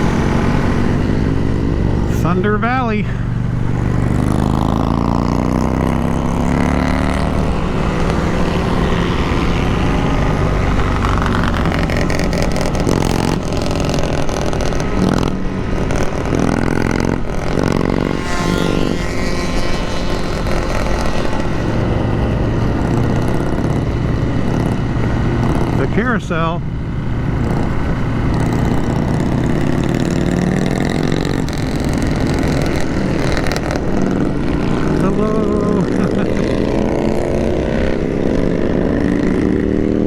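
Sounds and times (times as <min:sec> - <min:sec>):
wind rush on microphone: 0:00.0 - 0:02.3
motorcycle engine: 0:00.0 - 0:40.0.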